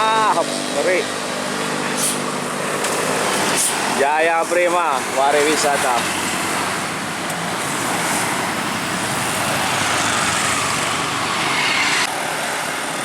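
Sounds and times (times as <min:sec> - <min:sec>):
vehicle tyre and engine noise: 0:00.0 - 0:13.0
rising whine: 0:08.5 - 0:12.7.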